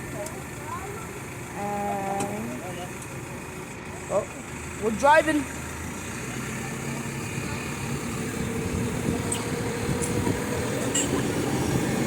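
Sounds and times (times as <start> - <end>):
tractor engine running: 0.0 - 12.0.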